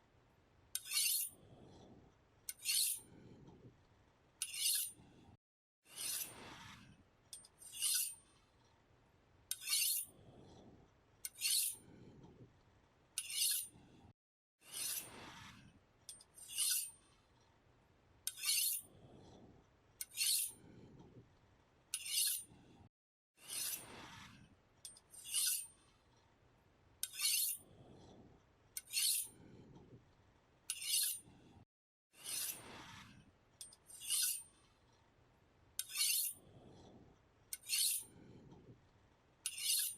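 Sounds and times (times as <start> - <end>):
knife scraping on sharpener: 0.8 - 1.4, 2.5 - 3.1, 4.4 - 5.0, 5.9 - 6.5, 7.4 - 8.2, 9.5 - 10.1, 11.2 - 11.8, 13.2 - 13.7, 14.6 - 15.2, 16.1 - 17.0, 18.3 - 18.9, 20.0 - 20.6, 21.9 - 22.5, 23.4 - 24.0, 24.9 - 25.7, 27.0 - 27.6, 28.8 - 29.4, 30.7 - 31.3, 32.2 - 32.9, 33.6 - 34.5, 35.8 - 36.4, 37.5 - 38.2, 39.4 - 39.9.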